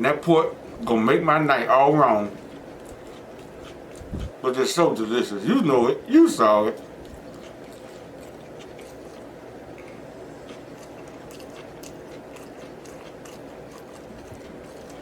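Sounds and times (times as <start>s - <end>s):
person chewing food: 1.6s - 4.4s, 6.7s - 15.0s.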